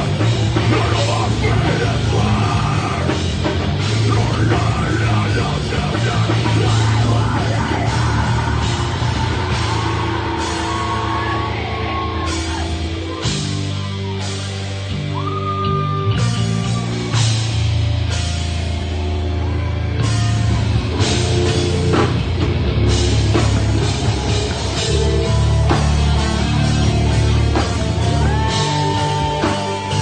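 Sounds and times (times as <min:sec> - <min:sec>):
heavy rock band playing live: 0:00.0 - 0:30.0.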